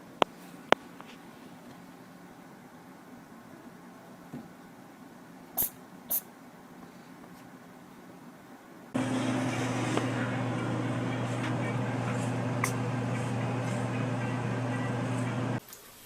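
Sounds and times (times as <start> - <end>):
mechanical hum with rushing noise: 9.0 - 15.6.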